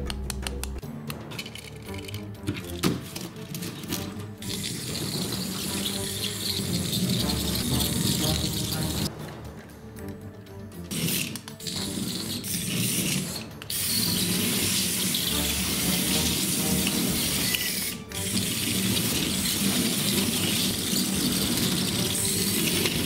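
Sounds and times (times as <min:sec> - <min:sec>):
gear mechanism rattling whir: 0:01.1 - 0:09.7, 0:10.8 - 0:23.0.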